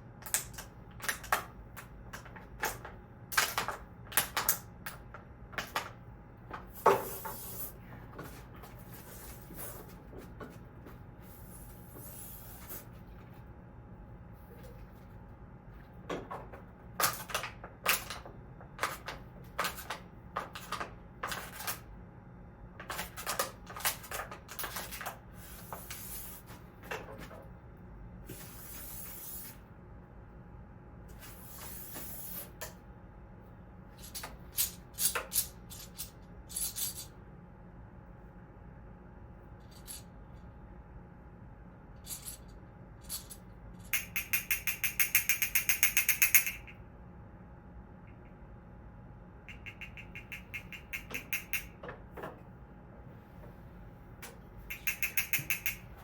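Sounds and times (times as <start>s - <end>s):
sharp clinks and taps: 43.9s - 46.8s, 49.5s - 51.8s, 54.7s - 55.9s.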